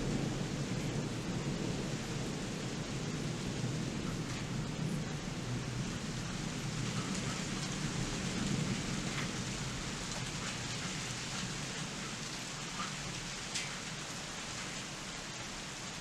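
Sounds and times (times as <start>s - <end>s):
low thunder rumble: 0.0s - 10.9s
steady rain: 0.0s - 16.0s
raindrops ticking: 6.3s - 14.1s.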